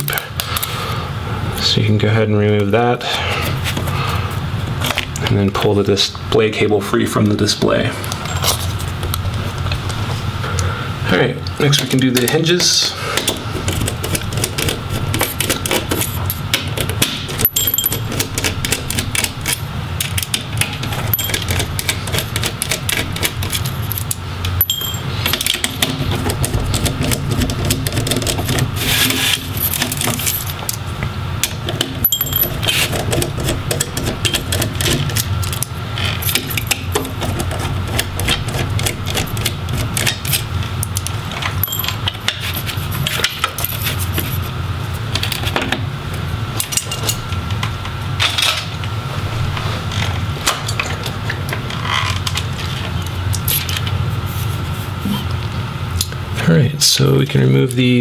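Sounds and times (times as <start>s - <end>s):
low steady hum: 0.0s - 58.0s
screwdriver clicks and screw clinks: 17.4s - 20.4s, 21.0s - 25.8s.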